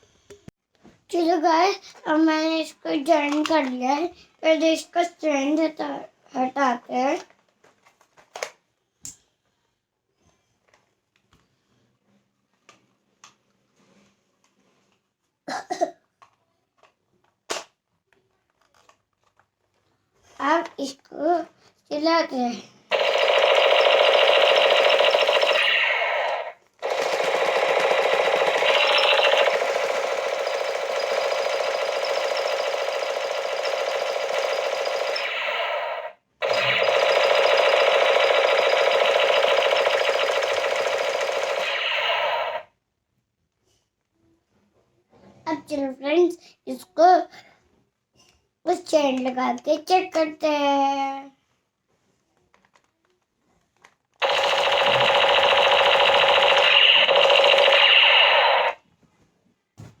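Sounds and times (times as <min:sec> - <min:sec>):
toy machine gun rattle: 0:03.1 - 0:03.8, 0:22.9 - 0:42.7, 0:54.2 - 0:58.8.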